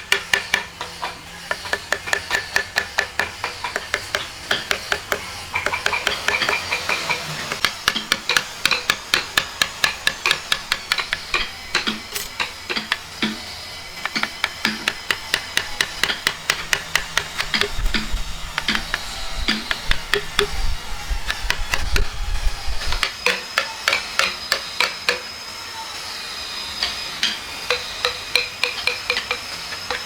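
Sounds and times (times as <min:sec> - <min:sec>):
tool striking wood: 0:00.0 - 0:22.2.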